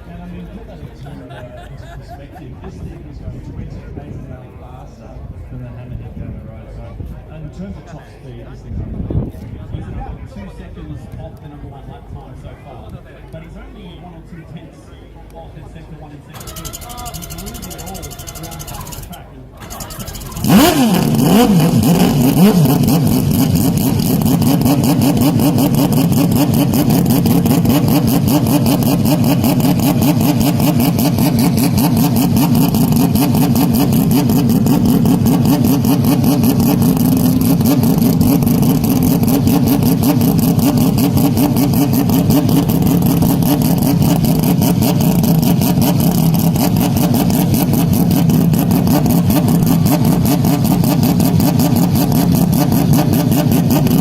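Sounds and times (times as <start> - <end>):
racing car engine running: 16.3 - 54.0.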